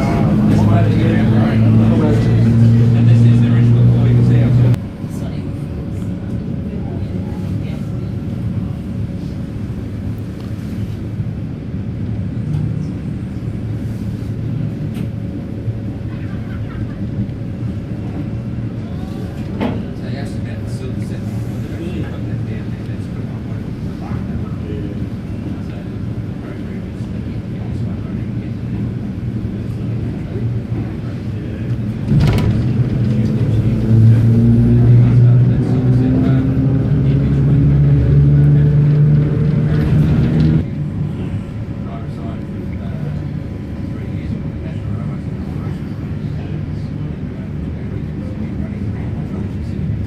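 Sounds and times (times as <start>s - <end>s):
steady hum: 0.0s - 50.0s
train carriage rumble: 0.0s - 50.0s
short clatter: 31.9s - 33.5s.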